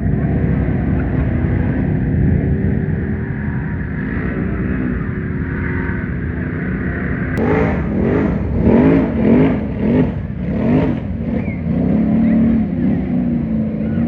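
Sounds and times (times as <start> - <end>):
atv engine revving: 0.0 - 14.0.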